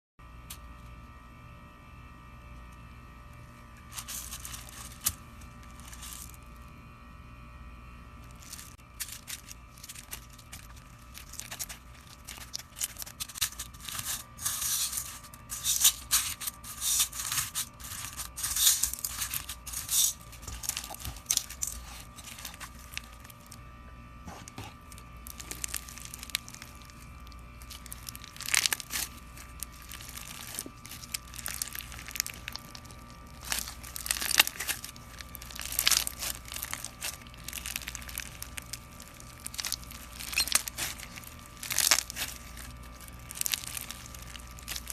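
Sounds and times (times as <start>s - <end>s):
faint electrical hum: 0.2s - 44.9s
slime crackling and popping: 8.3s - 23.6s, 24.9s - 44.9s.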